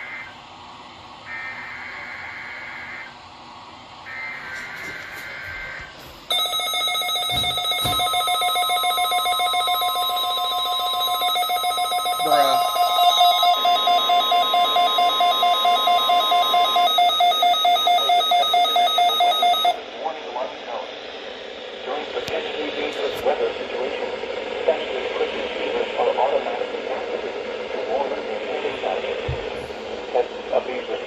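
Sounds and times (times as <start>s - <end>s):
alarm with pitch sweep: 0.0s - 0.4s, 1.2s - 3.2s, 4.0s - 19.8s
pulsing electronic alarm: 0.0s - 19.9s
steady warning tone: 0.0s - 31.0s.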